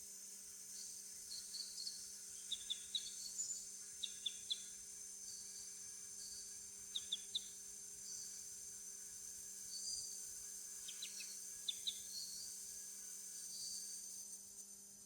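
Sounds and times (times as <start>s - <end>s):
insect drone: 0.0s - 15.0s.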